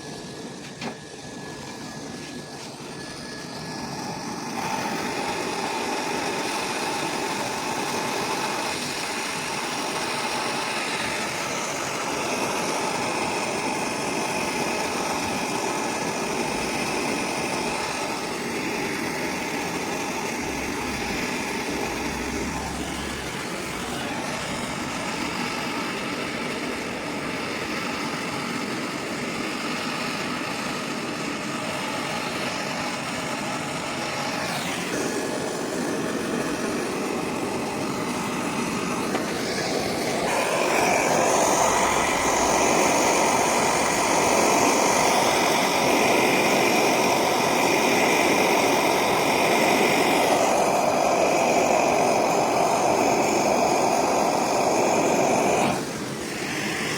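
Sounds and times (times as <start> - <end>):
air conditioning compressor hum: 0.0 - 28.5
high whine: 0.0 - 29.4, 31.2 - 56.9.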